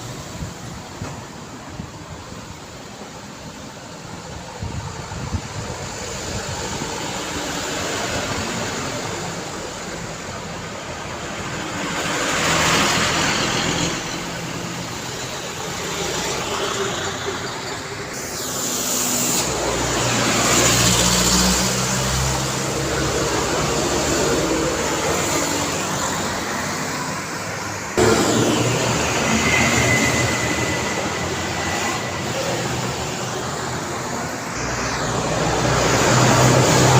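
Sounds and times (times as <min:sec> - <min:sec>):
cars passing by: 0:00.0 - 0:36.9.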